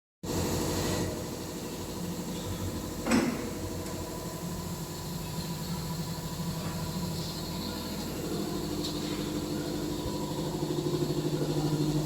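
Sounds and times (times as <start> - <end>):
steady mechanical hum: 0.2 - 12.0
short clunk: 3.0 - 3.5.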